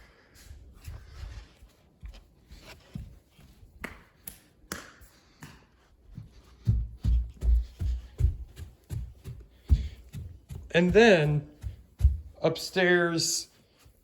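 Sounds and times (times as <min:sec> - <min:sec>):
footsteps in a room: 0:00.0 - 0:14.0
heavy low thuds: 0:06.7 - 0:12.5.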